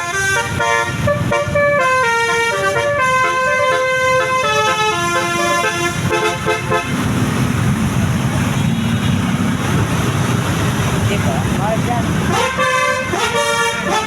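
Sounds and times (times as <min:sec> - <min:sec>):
bus horn playing a tune: 0:00.0 - 0:07.1, 0:12.3 - 0:14.0
bus engine rumbling: 0:00.0 - 0:14.0.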